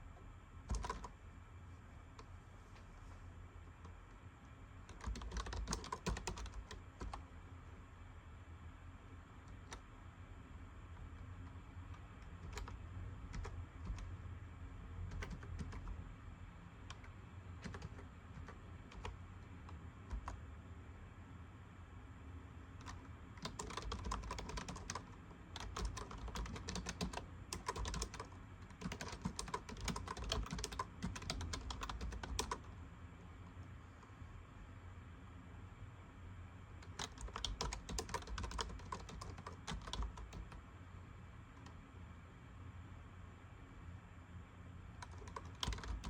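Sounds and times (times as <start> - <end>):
typing on keyboard: 0.7 - 1.1, 4.9 - 7.2, 11.9 - 14.1, 15.1 - 16.0, 16.8 - 20.4, 22.8 - 32.7, 36.8 - 40.6, 45.0 - 46.0.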